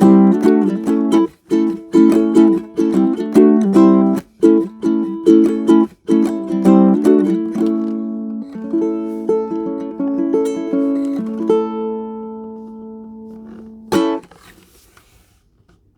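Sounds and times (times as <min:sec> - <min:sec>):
ukulele plucked notes and chords: 0:00.0 - 0:14.5
ukulele strum: 0:00.0 - 0:14.8.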